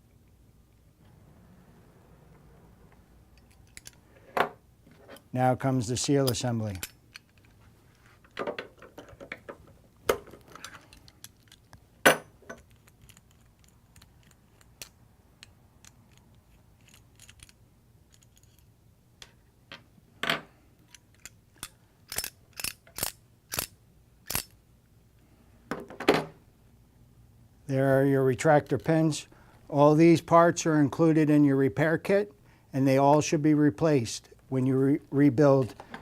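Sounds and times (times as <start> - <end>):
small metal parts clicking and clattering: 3.4 - 4.0, 10.2 - 11.8, 12.4 - 18.7, 20.9 - 23.7.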